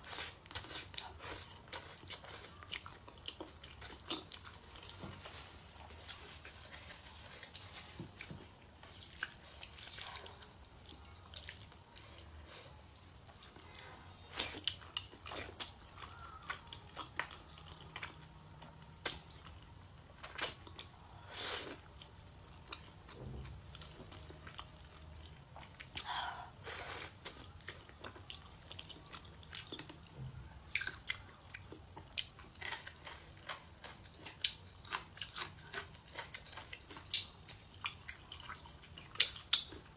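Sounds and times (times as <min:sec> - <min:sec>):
chewing with wet mouth clicks: 0:00.2 - 0:04.9, 0:09.0 - 0:12.3, 0:14.3 - 0:21.2, 0:27.2 - 0:39.9.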